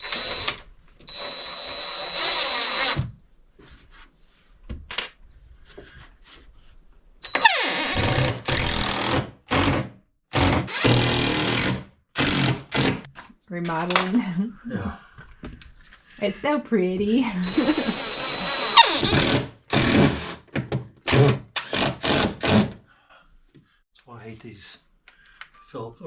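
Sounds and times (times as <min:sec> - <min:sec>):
cordless drill driving screws: 0:00.0 - 0:03.0, 0:07.3 - 0:09.8, 0:10.4 - 0:13.1, 0:17.4 - 0:20.4, 0:21.1 - 0:22.7.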